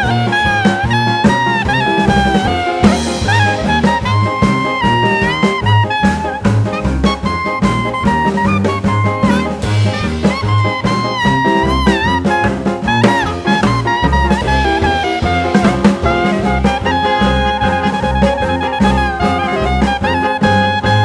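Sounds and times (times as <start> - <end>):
drums: 0.0 - 21.0
horn melody: 0.0 - 21.0
walking bass: 0.0 - 21.0.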